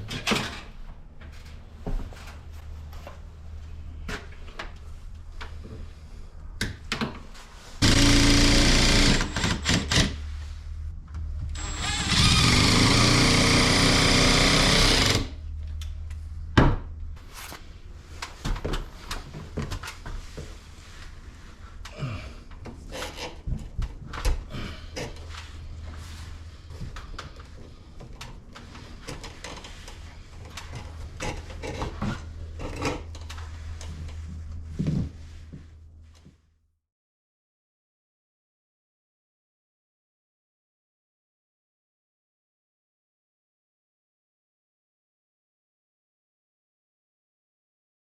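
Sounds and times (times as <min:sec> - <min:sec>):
power tool running: 0:07.8 - 0:10.2, 0:11.6 - 0:15.4.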